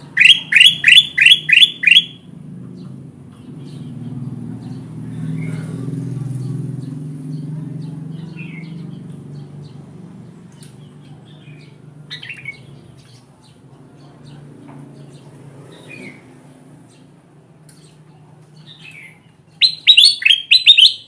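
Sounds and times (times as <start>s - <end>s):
bulbul chirping calls: 0.0s - 2.2s, 18.7s - 21.0s.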